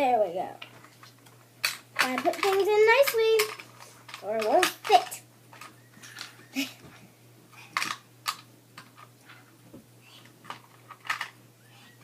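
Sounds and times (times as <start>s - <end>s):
plastic toy dishes clacking: 1.6s - 6.3s.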